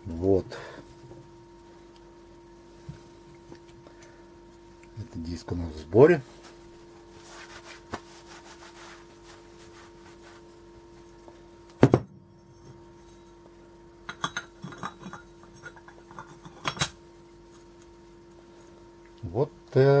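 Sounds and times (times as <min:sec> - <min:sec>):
small metal clinks and taps: 0:14.1 - 0:16.9.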